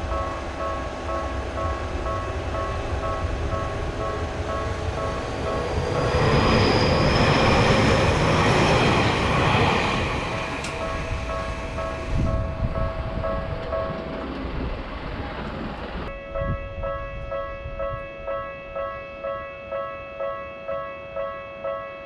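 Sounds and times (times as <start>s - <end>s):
level-crossing warning bell: 0.0s - 14.8s, 16.0s - 22.0s
train passing: 0.0s - 19.9s
high squeal: 4.9s - 12.4s.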